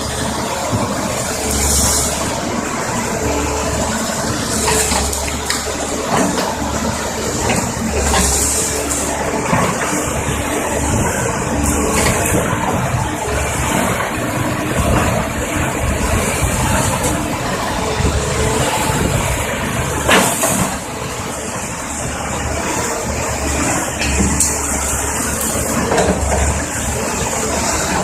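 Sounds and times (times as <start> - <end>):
excavator diesel engine running: 0.0 - 28.0.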